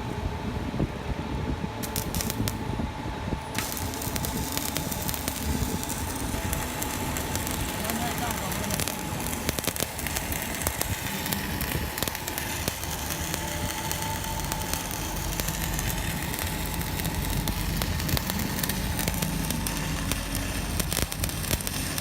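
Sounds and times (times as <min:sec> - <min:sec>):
welding arc crackling and popping: 0:01.8 - 0:02.7, 0:03.5 - 0:22.0.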